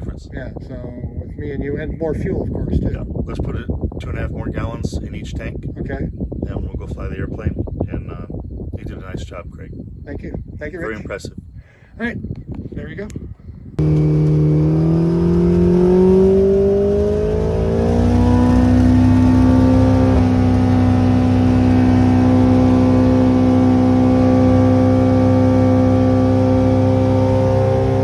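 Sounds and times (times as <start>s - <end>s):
light aircraft engine and propeller: 13.8s - 28.0s.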